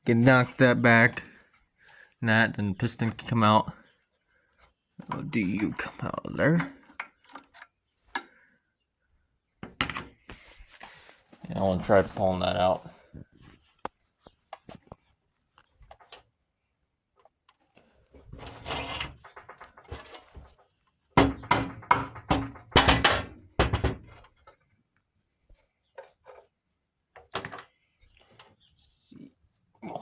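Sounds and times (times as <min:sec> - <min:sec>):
scraping and rustling: 0:10.2 - 0:16.1
metallic knocks and clanks: 0:18.5 - 0:20.4, 0:21.2 - 0:24.2.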